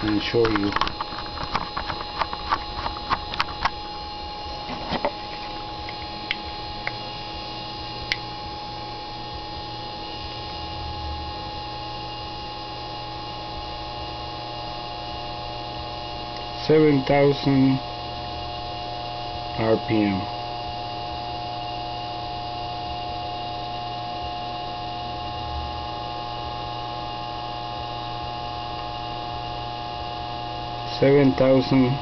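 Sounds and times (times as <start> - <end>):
sharp clicks and knocks: 0.0 - 3.8
electric motor humming: 0.0 - 32.0.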